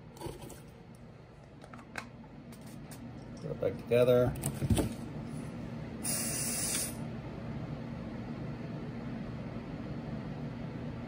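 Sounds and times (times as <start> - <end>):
aerosol spray hiss: 6.0 - 7.0.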